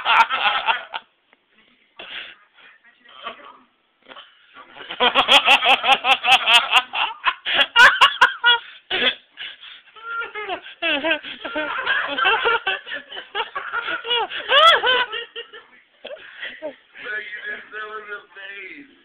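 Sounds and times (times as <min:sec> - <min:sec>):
people laughing hard: 0:00.0 - 0:01.0, 0:04.7 - 0:16.7
giggling: 0:04.0 - 0:16.9.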